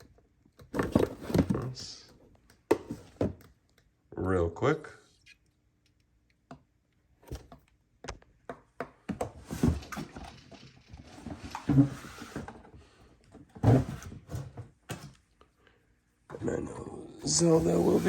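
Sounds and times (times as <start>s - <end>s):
rustling and scraping: 0.8s - 2.1s, 9.4s - 15.1s, 17.3s - 18.0s.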